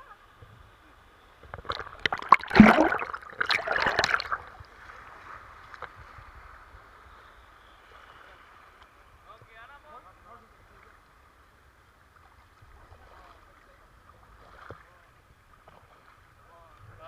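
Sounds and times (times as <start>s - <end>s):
loud splashing: 1.7s - 4.5s
river water rushing: 1.7s - 4.5s.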